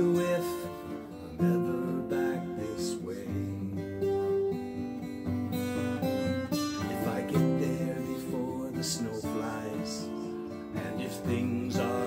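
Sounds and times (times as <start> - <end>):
acoustic guitar strumming: 0.0 - 12.0.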